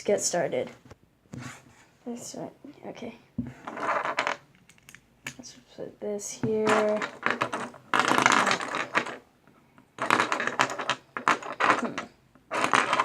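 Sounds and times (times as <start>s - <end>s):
plastic cube pieces clicking: 6.6s - 9.2s, 10.0s - 13.0s.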